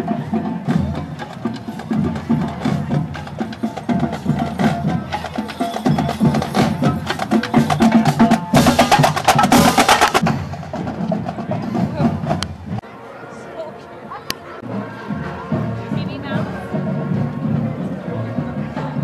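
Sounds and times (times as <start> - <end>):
drum hits: 1.9 - 12.8.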